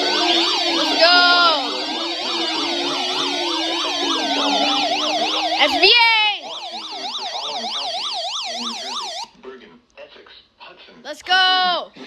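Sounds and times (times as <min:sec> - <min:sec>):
electronic sirens yelping: 0:00.0 - 0:09.3.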